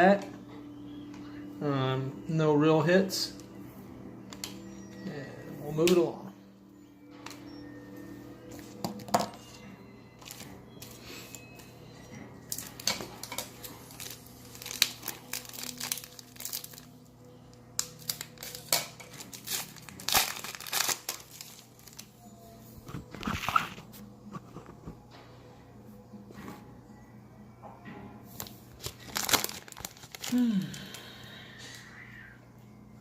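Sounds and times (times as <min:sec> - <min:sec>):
plastic wrappers crinkling and tearing: 0:12.5 - 0:22.2, 0:28.4 - 0:31.8.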